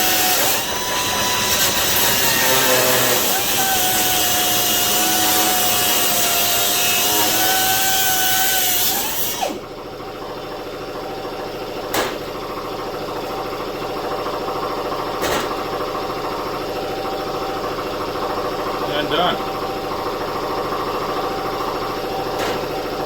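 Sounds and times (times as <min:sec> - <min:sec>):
power tool cutting sheet metal: 0:00.0 - 0:09.7.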